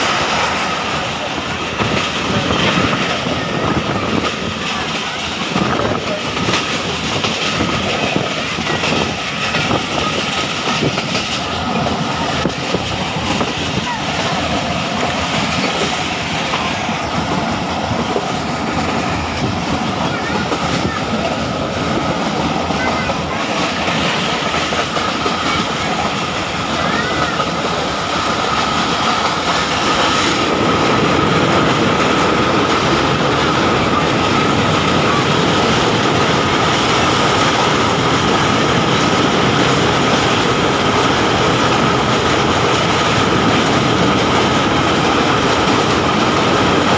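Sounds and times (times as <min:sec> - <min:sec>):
train wheels rumbling on rails: 0:00.0 - 0:46.9.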